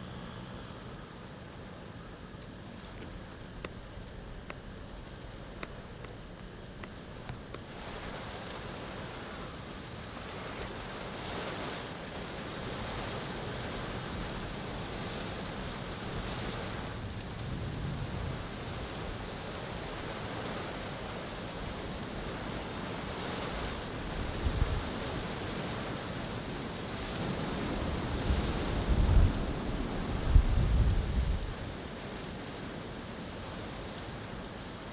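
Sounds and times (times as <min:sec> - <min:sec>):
strong gusting wind: 0:12.6 - 0:20.8, 0:23.2 - 0:25.9, 0:26.8 - 0:31.8
wind buffeting microphone: 0:23.3 - 0:25.8, 0:27.0 - 0:31.8.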